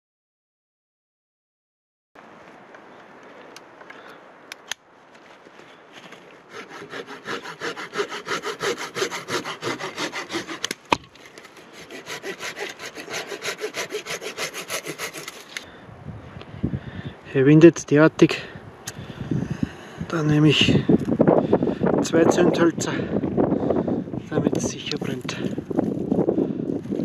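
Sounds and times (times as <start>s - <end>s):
pull saw cutting wood: 6.5s - 15.6s.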